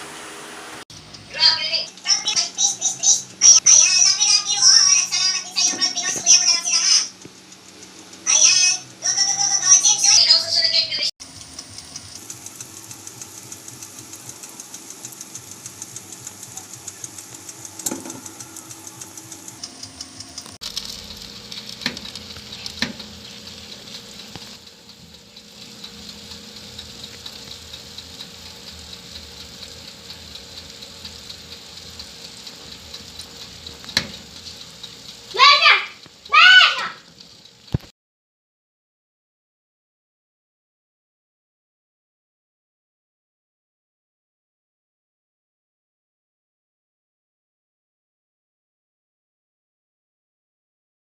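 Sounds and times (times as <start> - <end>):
chicken sizzling on a grill: 0.0 - 37.9
sharp clicks: 0.9 - 37.9.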